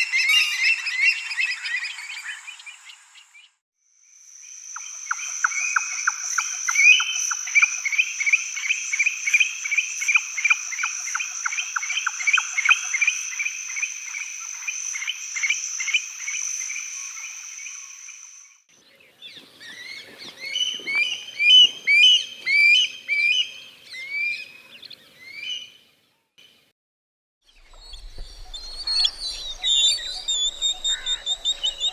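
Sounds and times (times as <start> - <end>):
frog-like calls: 28.2 - 31.9.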